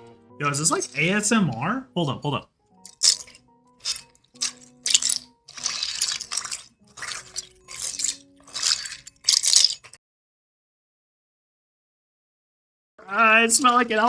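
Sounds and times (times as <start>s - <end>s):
plastic keycaps clattering into bowl: 0.7s - 1.2s, 2.8s - 10.0s.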